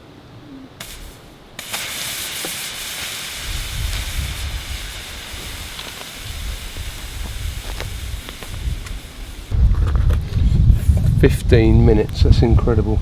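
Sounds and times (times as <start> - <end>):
furnace burner hissing: 0.7 - 13.0.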